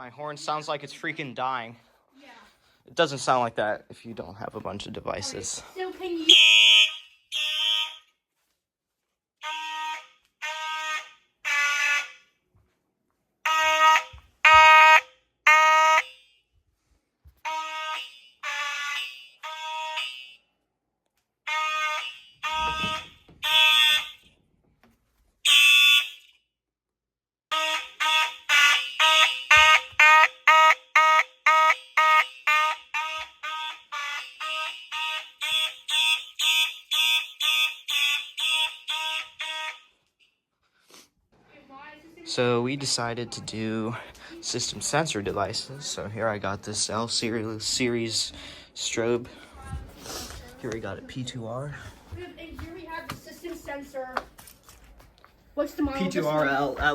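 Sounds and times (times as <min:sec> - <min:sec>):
fire alarm horns blasting: 0:06.2 - 0:08.4, 0:09.4 - 0:12.4, 0:13.4 - 0:16.8, 0:17.4 - 0:20.7, 0:21.4 - 0:24.6, 0:25.4 - 0:26.5, 0:27.5 - 0:40.4, 0:42.3 - 0:49.5.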